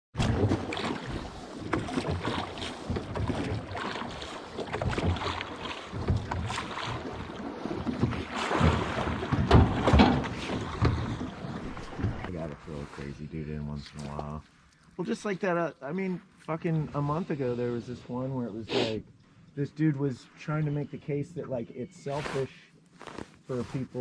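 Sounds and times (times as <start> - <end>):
river water splashing: 0.2 - 13.1.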